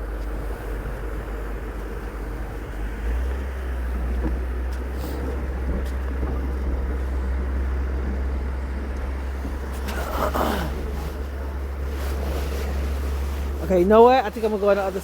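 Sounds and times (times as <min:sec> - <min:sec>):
vehicle engine rumbling: 0:00.0 - 0:15.0.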